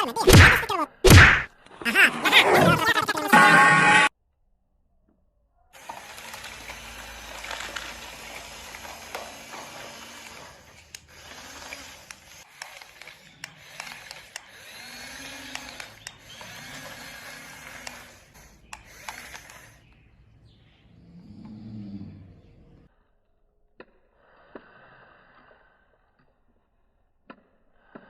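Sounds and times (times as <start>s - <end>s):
small motor whirring: 5.8s - 20.2s
sharp clicks: 10.8s - 20.0s.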